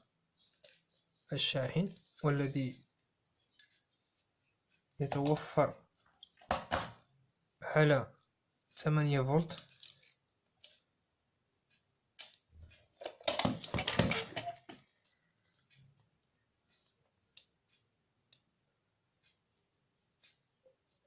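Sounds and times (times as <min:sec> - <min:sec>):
cable and plug clicks and rattles: 0:13.0 - 0:14.8.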